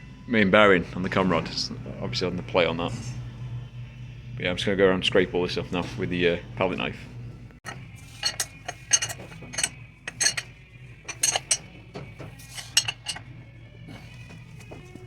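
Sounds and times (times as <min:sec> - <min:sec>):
knife scraping metal: 0:07.7 - 0:10.5, 0:11.1 - 0:11.7, 0:12.3 - 0:13.2.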